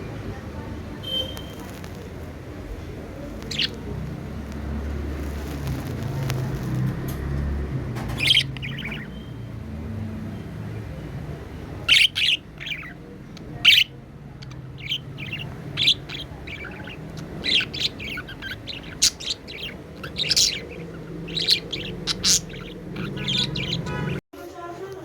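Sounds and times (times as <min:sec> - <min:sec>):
budgie chirping: 0:03.2 - 0:06.8, 0:08.1 - 0:09.6, 0:11.8 - 0:24.2.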